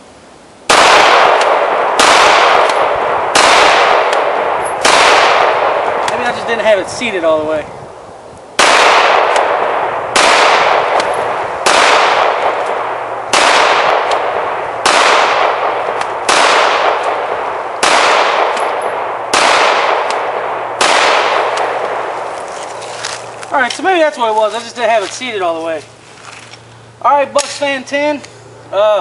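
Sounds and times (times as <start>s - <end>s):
pistol shots with echo: 0.7s - 6.7s, 8.6s - 22.2s.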